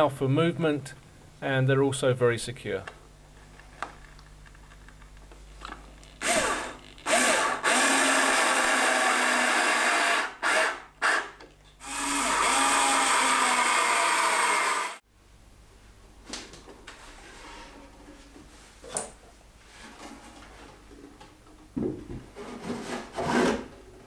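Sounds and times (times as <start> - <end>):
power drill driving screws: 6.2 - 15.0.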